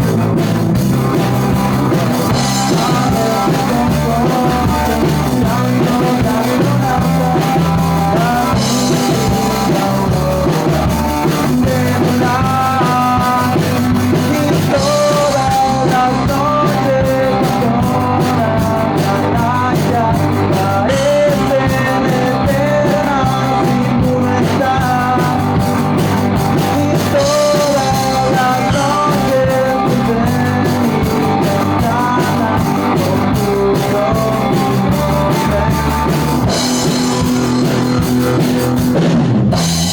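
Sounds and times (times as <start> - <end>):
drum kit: 0.0 - 39.9
electric guitar: 0.0 - 39.9
person singing: 0.0 - 39.9.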